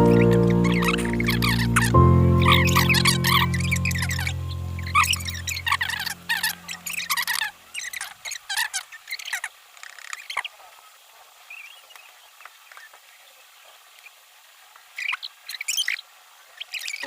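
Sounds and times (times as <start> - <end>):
background music: 0.0 - 7.0
faint chirps and clicks: 0.0 - 10.6.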